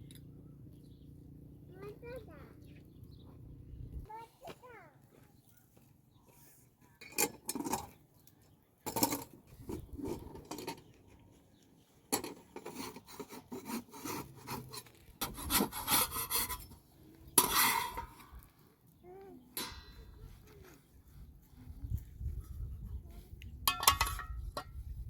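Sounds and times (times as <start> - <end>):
metal cookware clattering: 7.0 - 8.0, 8.8 - 10.9, 17.3 - 18.3, 23.6 - 24.8.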